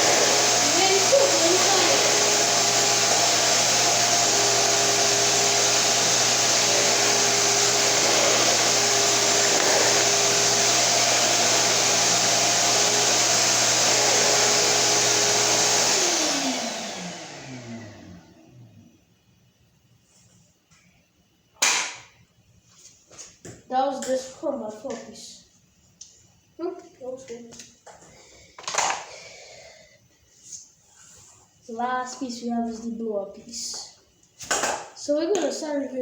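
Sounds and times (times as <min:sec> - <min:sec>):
motor winding down whine: 0:00.0 - 0:18.7
vacuum cleaner running: 0:00.0 - 0:19.0.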